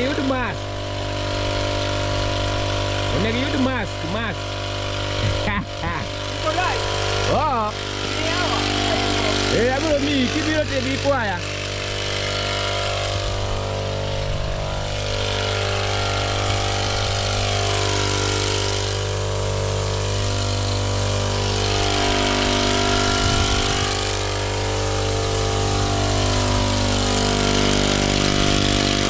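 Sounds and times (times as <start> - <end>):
small petrol engine running: 0.0 - 29.0.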